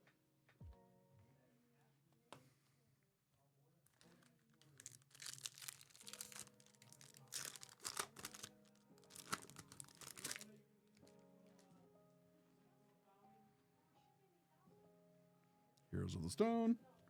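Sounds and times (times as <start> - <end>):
soft background music: 0.0 - 17.0
plastic packaging crinkling and tearing: 3.9 - 11.7.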